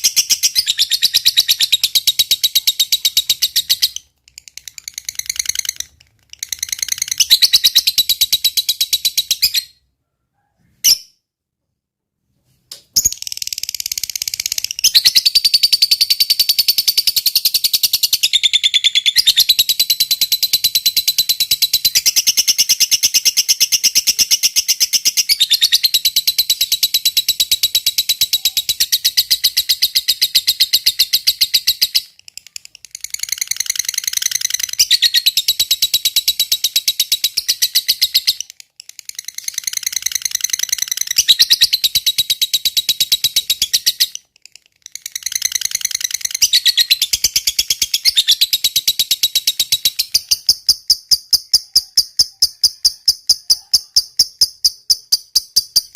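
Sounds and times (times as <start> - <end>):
lovebird chattering trill: 13.0 - 55.9.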